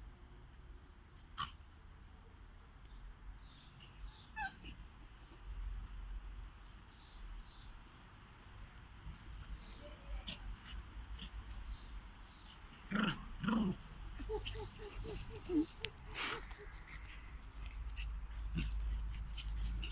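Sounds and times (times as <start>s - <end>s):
puppy yelping: 4.3s - 4.8s, 14.2s - 16.8s.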